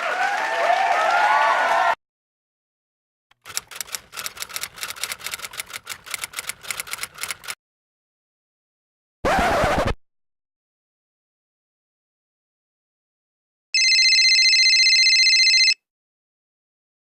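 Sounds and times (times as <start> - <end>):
crowd cheering and applauding: 0.0 - 2.0
typewriter keys clacking: 3.4 - 7.6.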